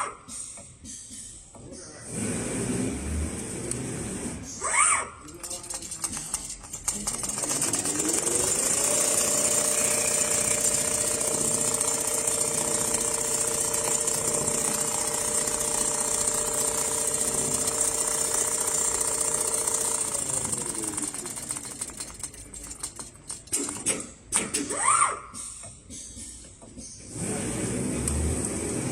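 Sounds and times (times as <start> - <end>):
sewing machine stitching: 5.2 - 24.2, 27.1 - 28.9.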